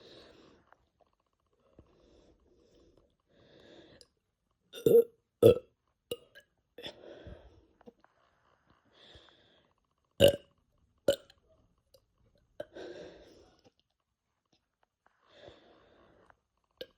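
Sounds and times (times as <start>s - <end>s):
loud burps: 4.8s - 5.6s, 10.2s - 10.5s.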